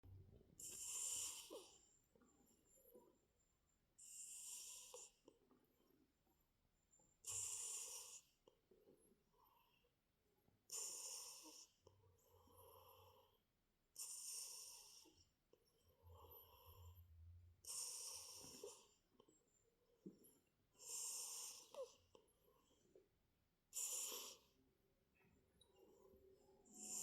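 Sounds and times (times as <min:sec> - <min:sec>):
cat snoring: 0:00.6 - 0:02.0, 0:04.0 - 0:05.3, 0:07.2 - 0:08.5, 0:10.7 - 0:13.4, 0:14.0 - 0:19.0, 0:20.8 - 0:22.8, 0:23.7 - 0:24.6, 0:26.6 - 0:27.0.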